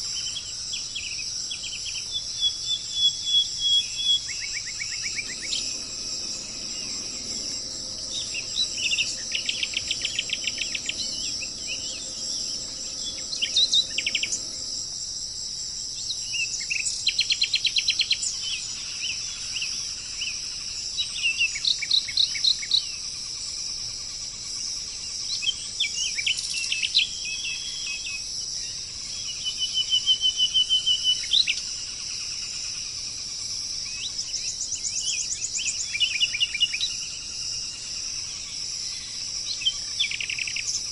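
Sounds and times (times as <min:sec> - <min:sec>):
bird chirps: 0:00.0 - 0:14.9, 0:38.2 - 0:40.9
high-pitched insect drone: 0:00.0 - 0:40.9
songbirds singing: 0:00.0 - 0:40.9.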